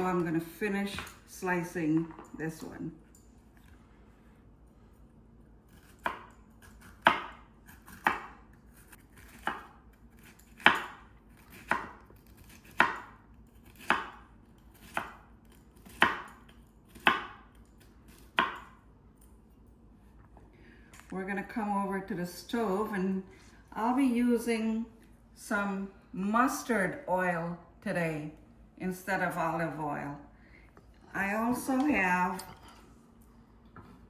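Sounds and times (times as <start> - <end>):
knife chopping on cutting board: 5.7 - 15.2, 15.8 - 17.5, 18.1 - 18.7.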